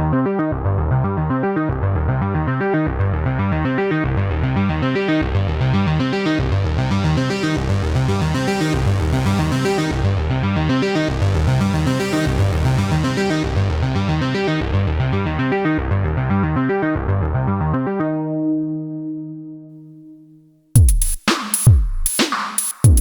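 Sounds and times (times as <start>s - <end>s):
synthesizer sequence of bass and plucky notes: 5.5s - 15.0s.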